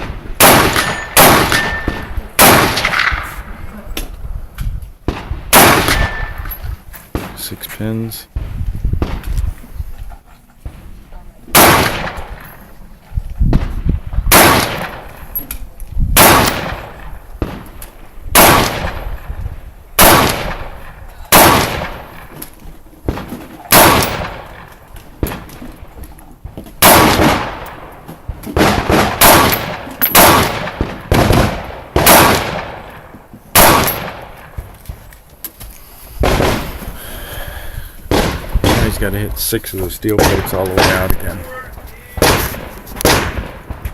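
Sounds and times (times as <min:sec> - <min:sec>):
rifle shots with echo: 0:00.0 - 0:03.5, 0:05.0 - 0:07.5, 0:10.7 - 0:12.7, 0:13.5 - 0:15.4, 0:16.1 - 0:19.4, 0:20.0 - 0:35.1, 0:36.2 - 0:36.9, 0:38.1 - 0:39.4, 0:40.0 - 0:41.5, 0:42.1 - 0:43.9.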